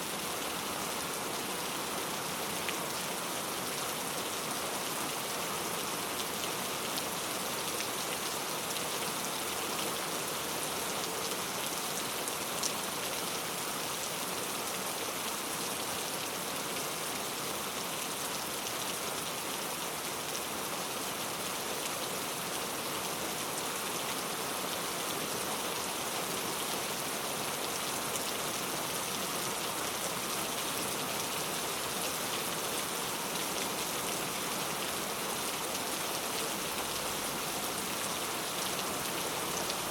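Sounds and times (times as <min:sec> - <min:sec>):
heavy rain falling: 0:25.2 - 0:39.9.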